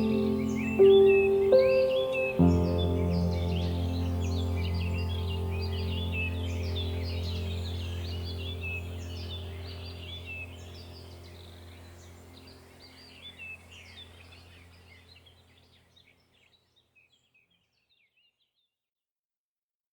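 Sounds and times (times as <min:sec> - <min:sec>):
low hum: 0:00.0 - 0:15.4
small birds chirping and twittering: 0:00.0 - 0:18.8.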